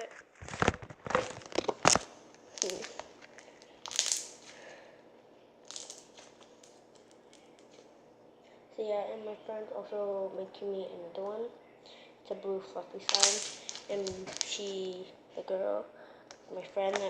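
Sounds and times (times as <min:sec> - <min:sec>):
slime popping and crackling: 0:00.4 - 0:04.6, 0:05.6 - 0:07.8, 0:13.0 - 0:15.0.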